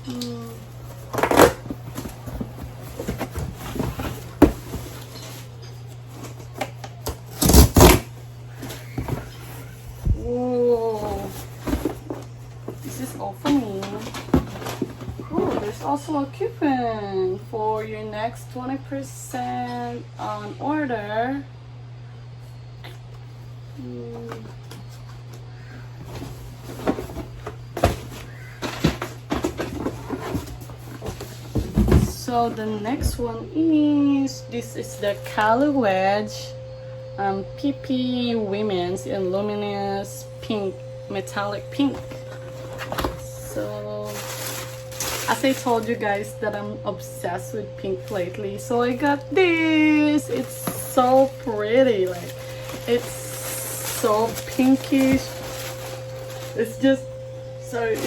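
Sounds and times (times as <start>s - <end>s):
steady low hum: 0.0s - 58.0s
cardboard box rustling: 0.8s - 6.6s, 7.3s - 16.1s, 26.0s - 33.4s, 41.2s - 46.6s, 47.3s - 58.0s
packaging rustling: 41.3s - 58.0s.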